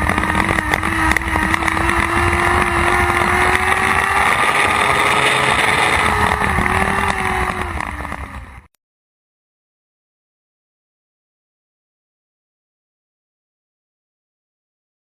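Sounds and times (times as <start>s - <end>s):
race car engine at high revs: 0.0s - 8.7s.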